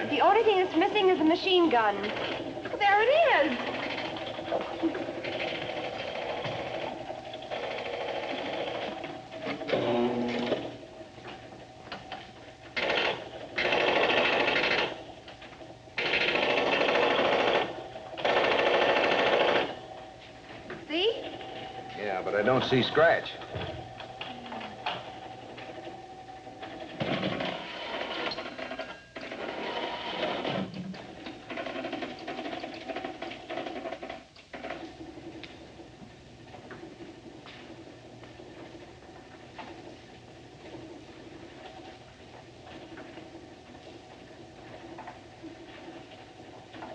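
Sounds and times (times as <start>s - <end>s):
machine clattering: 0.0s - 10.8s, 11.9s - 46.9s
steady hum: 0.0s - 46.9s
arcade machine-gun rattling: 12.8s - 15.1s, 16.0s - 19.8s, 31.3s - 34.8s.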